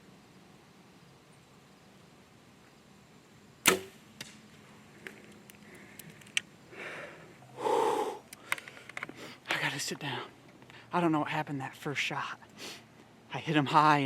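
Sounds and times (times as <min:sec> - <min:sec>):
bow string snap: 0:03.6 - 0:04.4
small clicks: 0:05.0 - 0:06.5.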